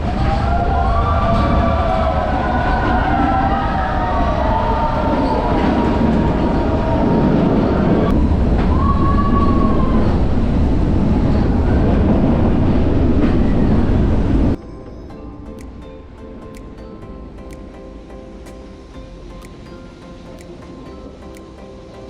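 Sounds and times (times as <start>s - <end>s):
train wheels rumbling on track: 0.0s - 14.6s
train wheels squealing: 0.2s - 10.4s, 11.0s - 15.3s.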